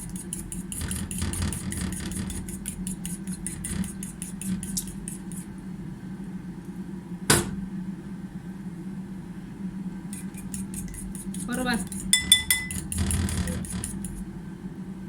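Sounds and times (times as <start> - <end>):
whisk clicking against bowl: 0.0 - 5.5, 10.1 - 14.2.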